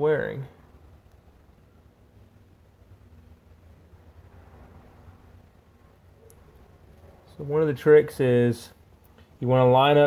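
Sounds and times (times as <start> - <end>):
low hum: 0.5 - 7.4.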